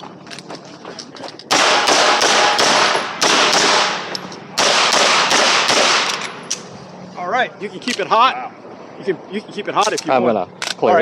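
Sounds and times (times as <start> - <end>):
pistol shots with echo: 1.5 - 6.2.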